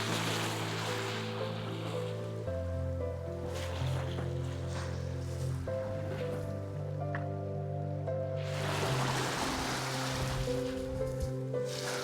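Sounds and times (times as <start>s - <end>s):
wave running up the shore: 0.0s - 2.4s, 8.4s - 12.0s
soft background music: 0.0s - 12.0s.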